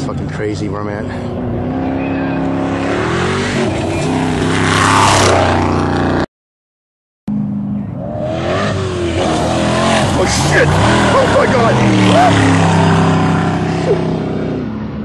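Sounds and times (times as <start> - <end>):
engine revving hard: 1.4 - 6.2, 8.0 - 14.7.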